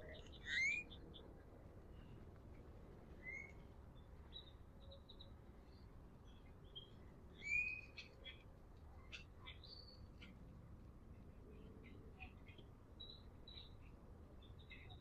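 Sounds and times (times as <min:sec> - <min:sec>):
birds chirping: 0:00.0 - 0:02.2
low steady background noise: 0:00.0 - 0:15.0.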